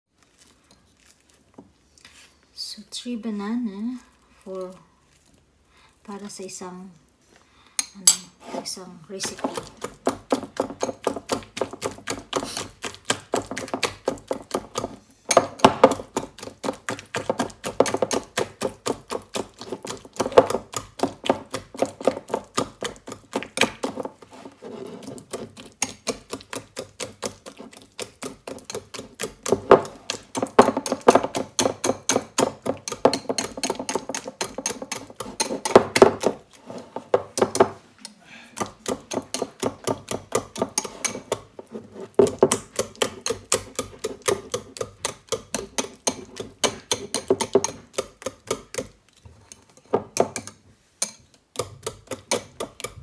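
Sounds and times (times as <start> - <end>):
utensil beating against bowl: 9.2 - 37.8, 38.6 - 49.0, 49.8 - 53.0.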